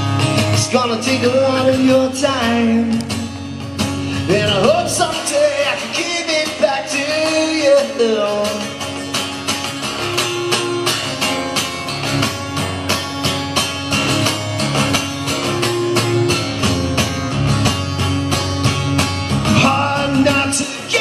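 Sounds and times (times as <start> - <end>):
guitar strumming chords: 0.0 - 21.0.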